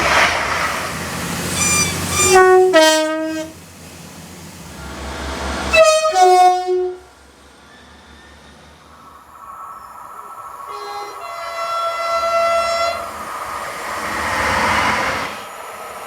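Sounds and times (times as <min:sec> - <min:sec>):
train rumbling: 0:00.0 - 0:16.0
short horn toots: 0:01.6 - 0:03.6
train horn blasts: 0:01.6 - 0:03.6, 0:04.8 - 0:07.2, 0:10.7 - 0:13.1.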